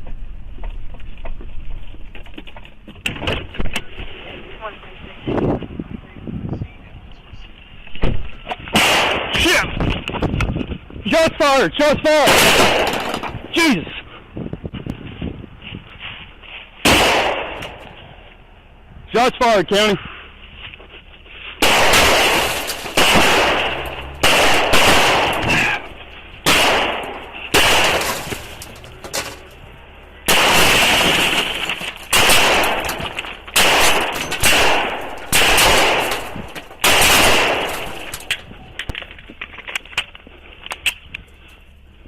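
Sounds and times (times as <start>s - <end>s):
gunshots: 8.7s - 9.7s, 12.1s - 13.8s, 16.8s - 17.9s, 21.6s - 29.3s, 30.2s - 38.3s.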